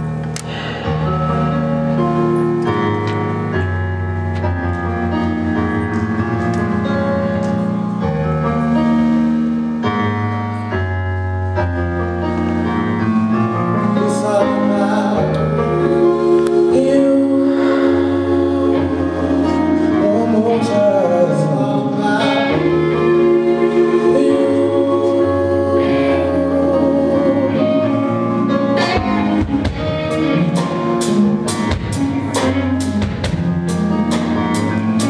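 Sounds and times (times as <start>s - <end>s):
sustained keyboard chords: 0.0s - 35.0s
person singing: 13.9s - 29.5s.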